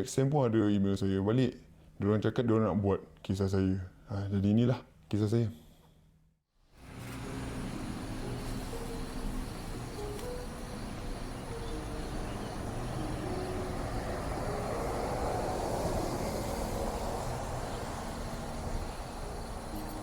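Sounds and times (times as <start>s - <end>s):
vehicle passing by: 6.8s - 20.0s.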